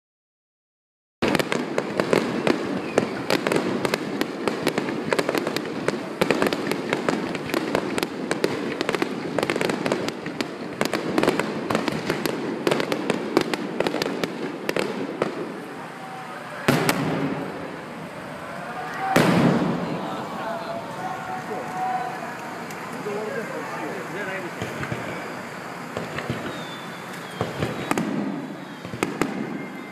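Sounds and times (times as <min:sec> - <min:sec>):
big firework booms ringing: 0:01.2 - 0:29.9
firework bangs and crackles: 0:01.2 - 0:29.9.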